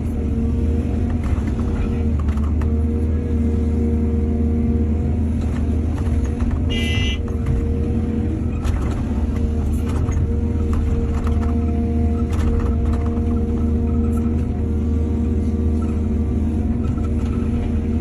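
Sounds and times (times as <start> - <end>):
excavator diesel engine droning: 0.0 - 18.0.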